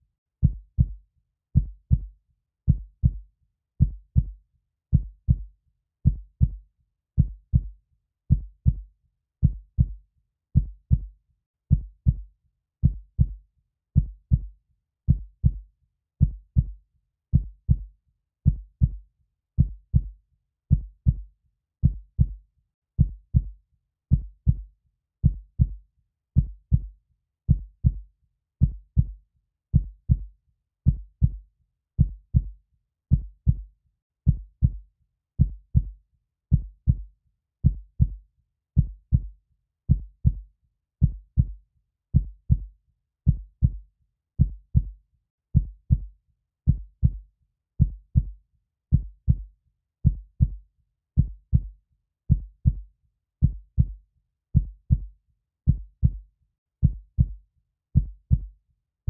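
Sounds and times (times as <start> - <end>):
heartbeat thuds: 24.1 - 24.6, 30.9 - 31.4, 35.4 - 35.9, 36.5 - 37.0, 37.6 - 38.2, 42.2 - 42.7, 43.3 - 43.8, 44.4 - 44.9, 45.6 - 46.1, 46.7 - 47.2, 47.8 - 48.3, 48.9 - 50.6, 51.2 - 51.7, 52.3 - 52.8, 53.4 - 54.0, 54.6 - 55.1, 55.7 - 56.2, 56.8 - 57.4, 58.0 - 58.5.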